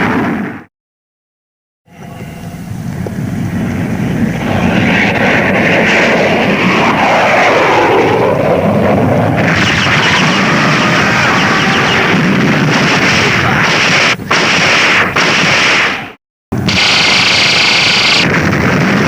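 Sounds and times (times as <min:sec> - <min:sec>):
aircraft-like engine noise: 0:01.9 - 0:14.4, 0:16.6 - 0:19.0.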